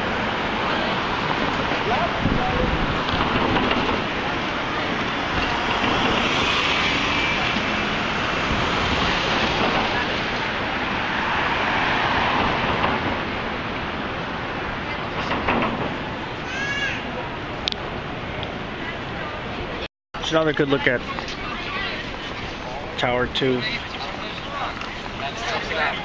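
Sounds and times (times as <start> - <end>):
wind rumbling on microphone: 0.0 - 16.4
passing vehicles: 0.0 - 26.0.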